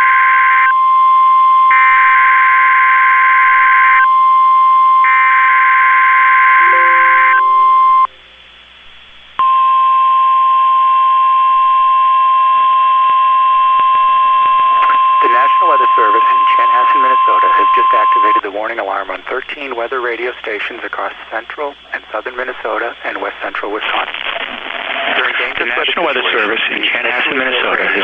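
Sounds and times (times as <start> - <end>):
single-pitch warning alarm tone: 0.0 - 8.2
steady tone: 6.6 - 8.5.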